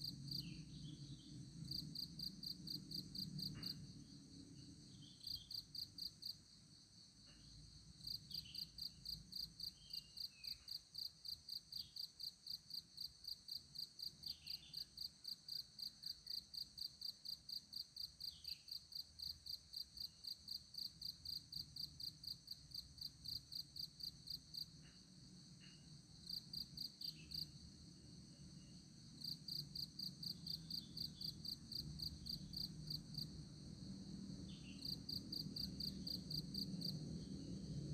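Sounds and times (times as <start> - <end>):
cricket chirping: 0.0 - 37.9
faint low hum: 0.0 - 37.9.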